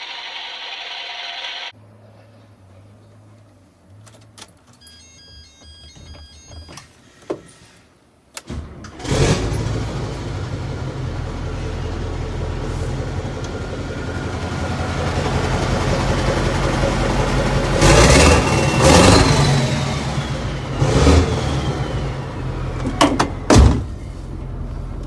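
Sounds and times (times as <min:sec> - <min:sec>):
diesel engine starting and idling: 0:08.4 - 0:25.0.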